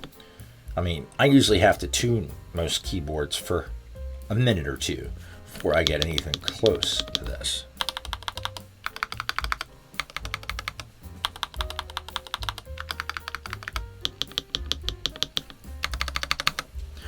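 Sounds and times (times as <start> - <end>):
background music: 0.0 - 17.0
mechanical keyboard typing: 7.8 - 16.7.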